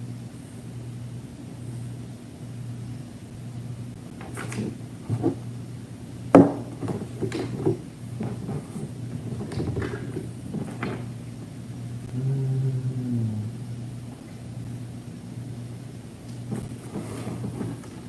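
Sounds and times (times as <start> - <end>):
steady low hum: 0.0 - 18.0
loud low buzz: 11.3 - 16.0.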